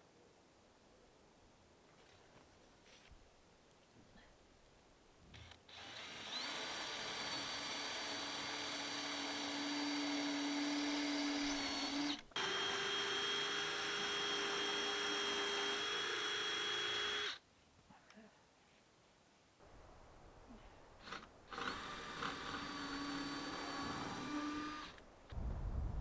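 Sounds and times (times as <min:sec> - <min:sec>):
electric power tool whining: 0:05.7 - 0:17.4, 0:21.0 - 0:25.0.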